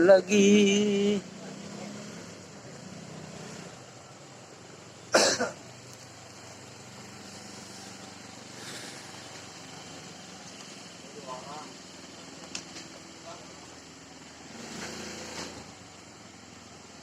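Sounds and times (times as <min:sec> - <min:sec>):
person coughing: 0:05.1 - 0:05.6.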